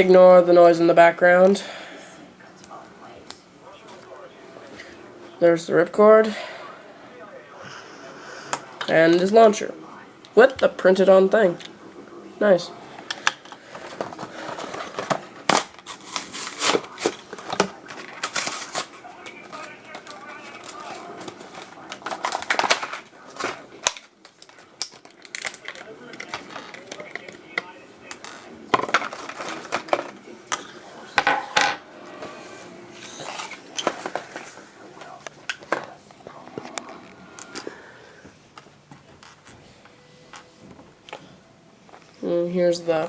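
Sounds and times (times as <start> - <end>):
plastic toy parts clattering: 13.1 - 18.9, 19.5 - 27.2, 28.2 - 30.2.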